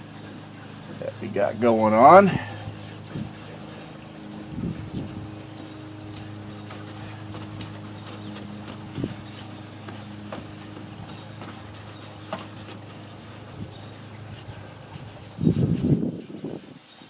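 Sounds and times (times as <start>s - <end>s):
steady low hum: 0.0s - 16.8s
sanding pad rubbing plastic: 0.0s - 17.0s.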